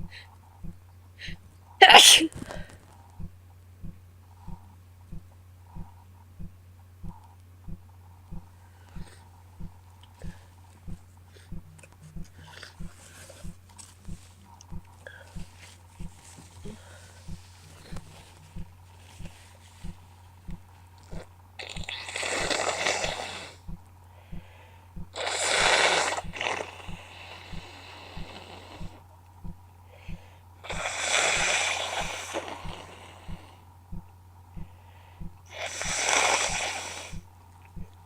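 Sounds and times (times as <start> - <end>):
woman blowing and sniffing nose: 1.8 - 2.6, 21.7 - 23.6, 25.2 - 27.0, 30.7 - 33.0, 35.5 - 37.2.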